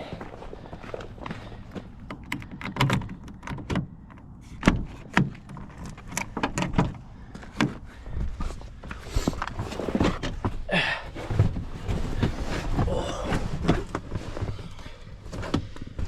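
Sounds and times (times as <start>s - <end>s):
irregular knocks and clunks: 1.2s - 8.0s.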